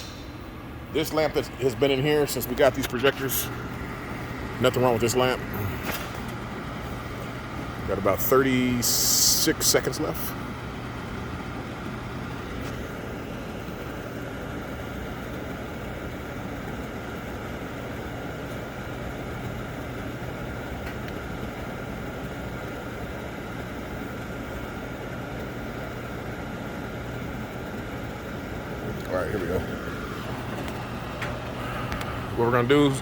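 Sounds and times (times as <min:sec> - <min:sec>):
low hum: 0:00.0 - 0:18.0
projector cooling fans whirring: 0:00.0 - 0:33.0.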